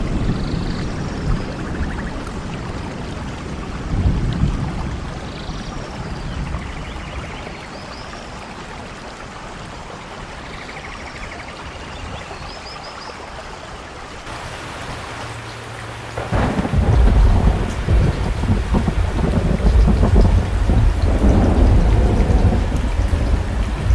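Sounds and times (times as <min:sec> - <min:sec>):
steady rain: 0:00.0 - 0:23.9
thunder rumble: 0:14.3 - 0:23.9.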